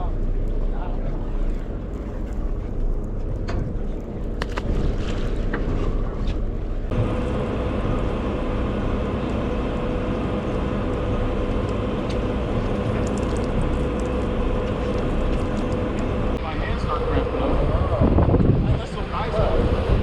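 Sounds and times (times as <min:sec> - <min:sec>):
boat engine running: 0:00.0 - 0:20.0
steady hum: 0:00.0 - 0:20.0
water noise: 0:00.0 - 0:20.0
wind: 0:00.0 - 0:20.0.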